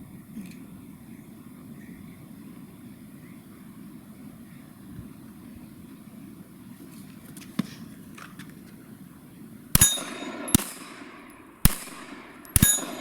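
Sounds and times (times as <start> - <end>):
low steady background: 0.0 - 13.0
metallic ring of steel gong: 9.8 - 10.6, 12.4 - 13.0
pistol shots: 9.8 - 13.0.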